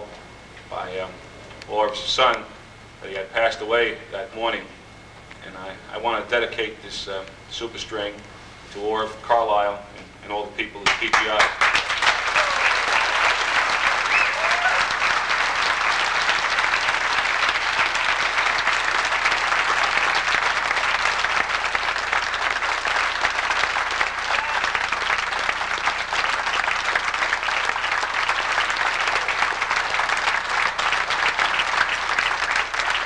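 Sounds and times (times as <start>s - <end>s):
audience applauding: 10.8s - 33.0s.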